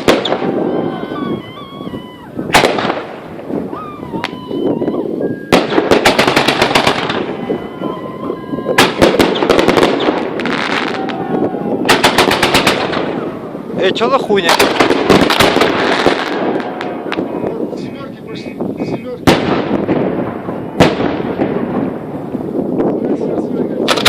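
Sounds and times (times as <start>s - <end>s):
fireworks whistling: 0.0s - 13.7s, 14.4s - 17.3s
fireworks bangs and crackling: 0.0s - 24.0s.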